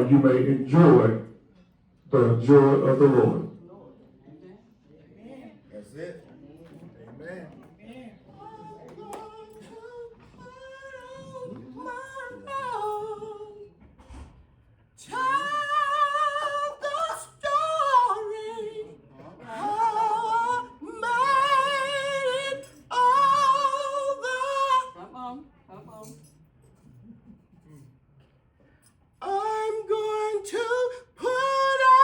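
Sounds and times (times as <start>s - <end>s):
woman singing gospel unaccompanied: 8.3s - 13.9s, 15.0s - 25.1s, 29.2s - 32.0s.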